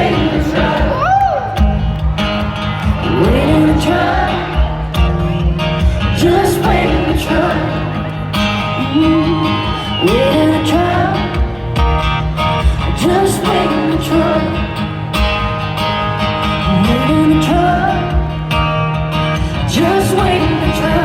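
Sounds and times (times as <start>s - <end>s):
country band playing: 0.0s - 21.0s
woman singing: 3.0s - 4.9s, 6.0s - 11.8s, 12.7s - 14.9s, 16.7s - 18.6s, 19.5s - 21.0s.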